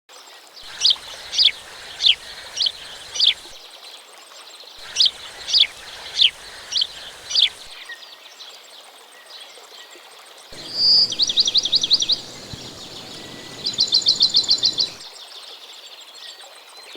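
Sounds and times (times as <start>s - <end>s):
songbird singing: 0.6s - 3.6s, 4.8s - 7.8s, 10.6s - 15.1s
steady background hiss: 0.6s - 3.7s, 4.8s - 7.8s, 10.6s - 15.1s.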